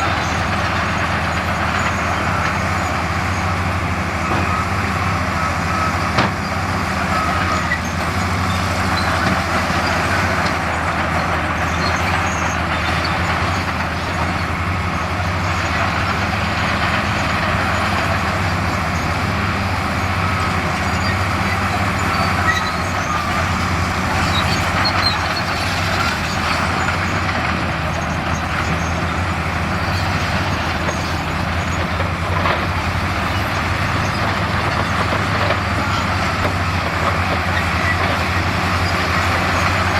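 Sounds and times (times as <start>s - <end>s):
diesel machinery engine drone: 0.0s - 39.9s.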